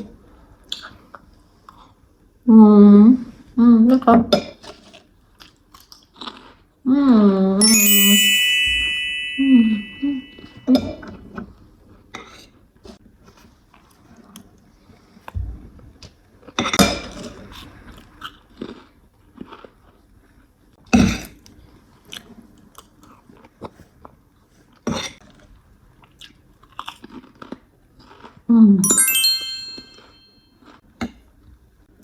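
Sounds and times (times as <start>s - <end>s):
person chewing crunchy food: 26.0s - 28.4s.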